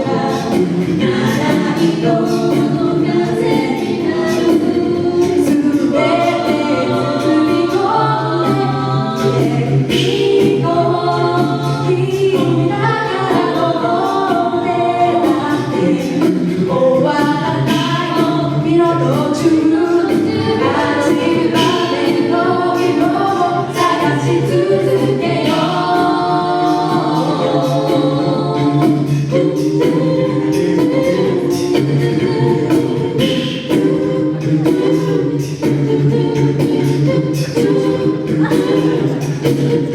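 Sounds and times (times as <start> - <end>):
a cappella group singing: 0.0 - 39.9
sung bass line: 0.0 - 39.9
vocal percussive beat: 0.0 - 39.9.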